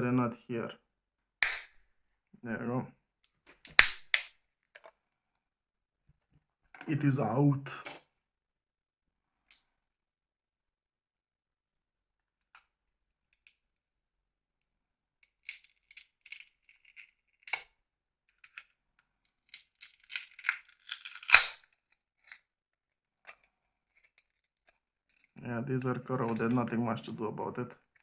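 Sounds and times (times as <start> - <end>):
plastic parts clicking and scraping: 15.2 - 17.7, 18.3 - 22.5, 23.2 - 25.4.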